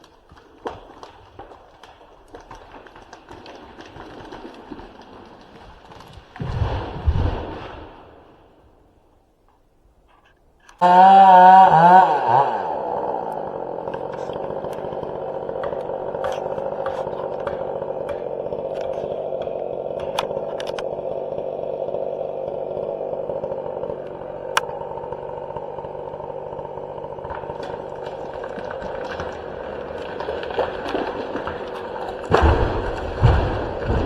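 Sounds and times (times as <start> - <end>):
chainsaw cutting timber: 0.0 - 8.6, 10.2 - 34.0
sharp clicks: 20.0 - 20.9.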